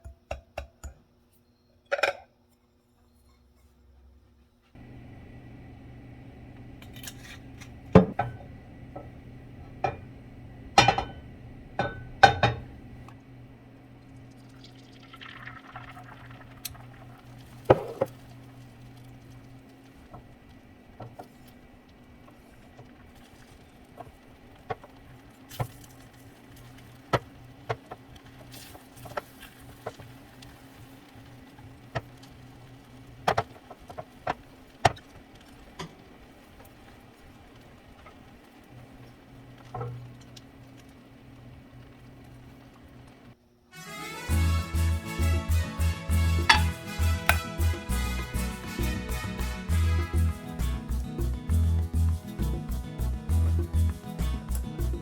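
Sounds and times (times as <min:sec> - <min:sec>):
steady low hum: 0:04.8 - 0:14.9
cookware clinking and tapping: 0:10.8 - 0:12.7, 0:46.5 - 0:47.4.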